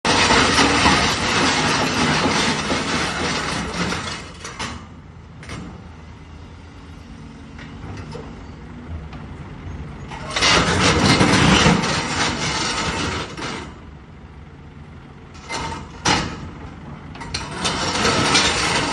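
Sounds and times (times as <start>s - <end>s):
knocking and clatter of machinery: 0.0s - 5.9s, 10.0s - 13.8s, 15.4s - 18.9s
excavator engine working hard: 0.1s - 18.9s.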